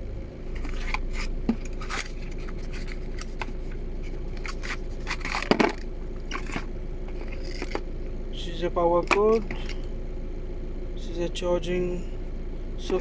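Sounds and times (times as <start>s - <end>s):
faint steady hum: 0.0s - 13.0s
plastic and cardboard rustling: 0.5s - 7.9s.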